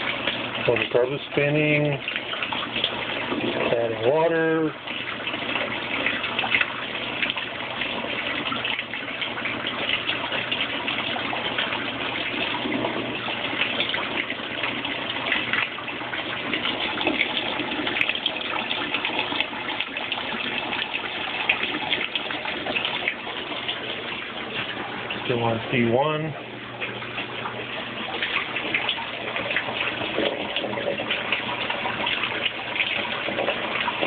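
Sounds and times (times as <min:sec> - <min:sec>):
water rushing into washing machine: 0:00.0 - 0:34.0.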